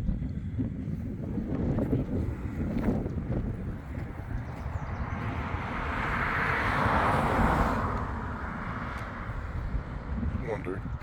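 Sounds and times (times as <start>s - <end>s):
wind buffeting microphone: 0.0s - 11.0s
vehicle passing: 4.1s - 11.0s.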